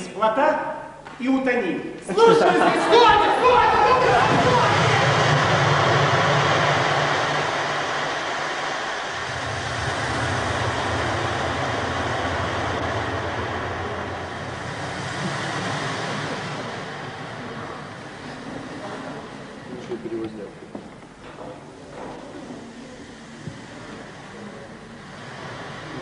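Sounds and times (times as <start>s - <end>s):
sea waves sound effect: 3.3s - 19.7s, 22.6s - 26.0s.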